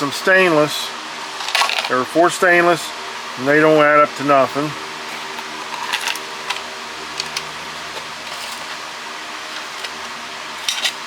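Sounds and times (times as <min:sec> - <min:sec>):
steady background hum: 0:00.0 - 0:11.0
metal scrap pieces clicking: 0:01.4 - 0:01.9, 0:05.1 - 0:08.8, 0:09.5 - 0:11.0.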